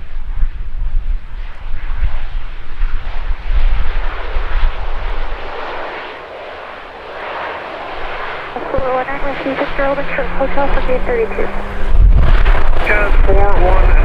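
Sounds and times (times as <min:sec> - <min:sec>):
airliner propeller engines running: 0:00.0 - 0:14.0
wind buffeting microphone: 0:07.9 - 0:14.0.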